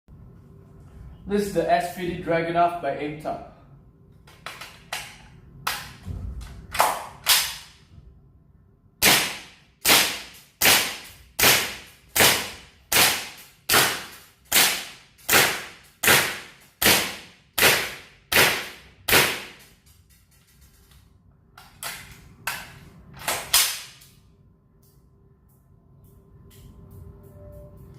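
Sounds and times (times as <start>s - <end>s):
airsoft rifle shots: 9.0s - 19.6s.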